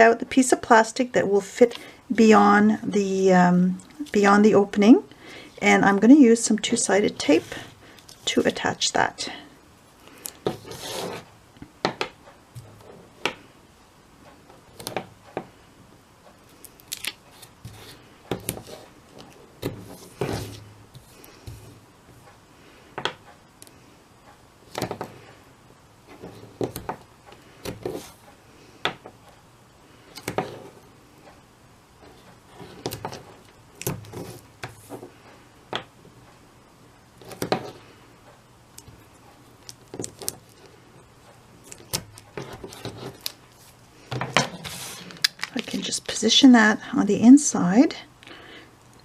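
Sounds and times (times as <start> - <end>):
paper and plastic rustling: 42.4 - 46.2.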